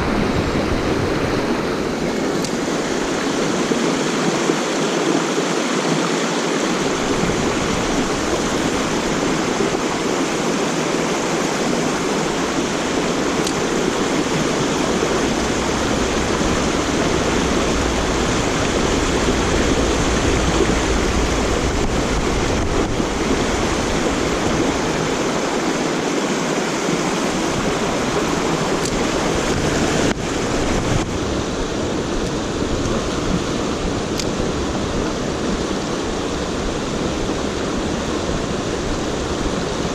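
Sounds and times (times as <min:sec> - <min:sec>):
stream rushing over rocks: 0:00.0 - 0:39.9.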